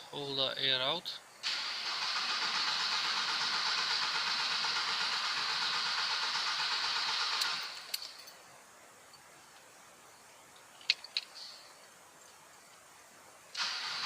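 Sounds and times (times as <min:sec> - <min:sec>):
starter motor cranking engine: 0:01.4 - 0:07.9, 0:13.6 - 0:14.0.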